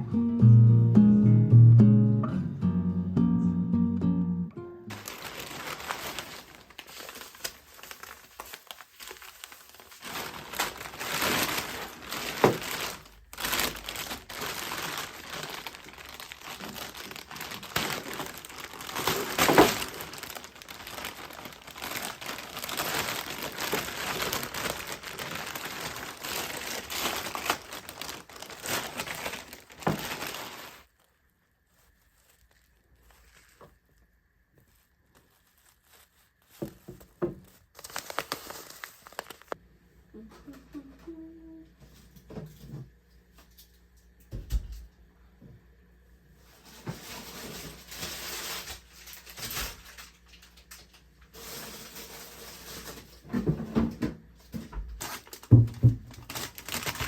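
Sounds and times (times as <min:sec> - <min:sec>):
crinkling and rustling: 0:04.9 - 0:39.6, 0:46.4 - 0:57.0.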